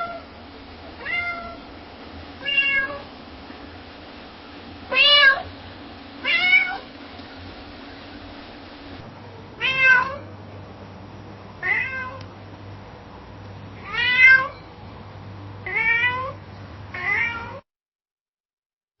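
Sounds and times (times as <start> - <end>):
cat meowing: 0.0 - 0.2, 1.0 - 1.6, 2.4 - 3.1, 4.9 - 5.5, 6.2 - 6.9, 9.6 - 10.2, 11.6 - 12.2, 13.8 - 14.6, 15.6 - 16.4, 17.0 - 17.6
faint low hum: 0.0 - 17.6.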